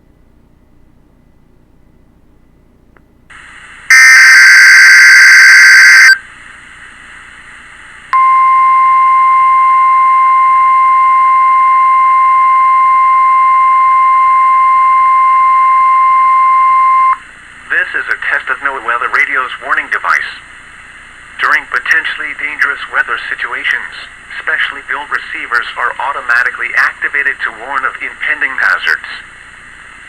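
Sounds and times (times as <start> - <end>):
radio receiver hiss: 3.3 - 10.0, 10.6 - 30.0
steady warning alarm tone: 3.9 - 6.2, 8.2 - 17.2.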